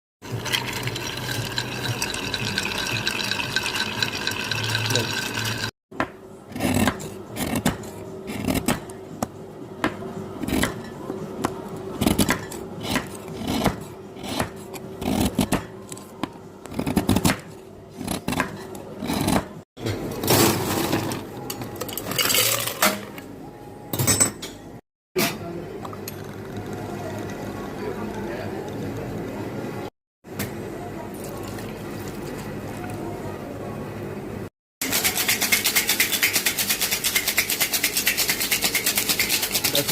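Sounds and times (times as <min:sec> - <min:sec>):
glassware and bar tools clinking: 0:00.3 - 0:05.7.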